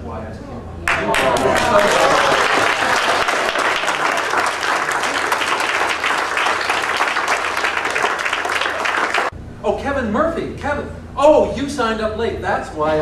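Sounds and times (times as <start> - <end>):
audience applauding: 0.9 - 9.3.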